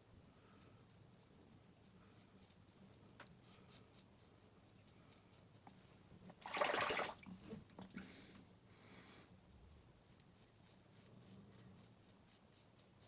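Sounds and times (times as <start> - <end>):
water splash: 6.4 - 7.3.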